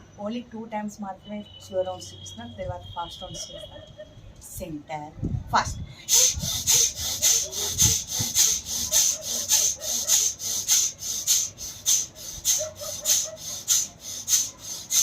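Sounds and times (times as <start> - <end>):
person breathing hard and fast: 5.9 - 15.0.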